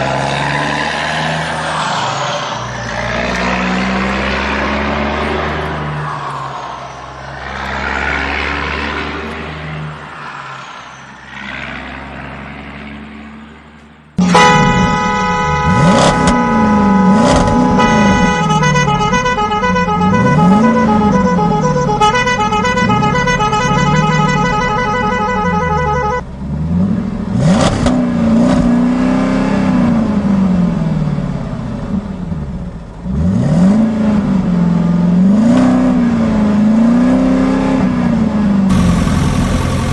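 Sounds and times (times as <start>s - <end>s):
engine humming: 11.2s - 33.2s, 38.5s - 39.9s.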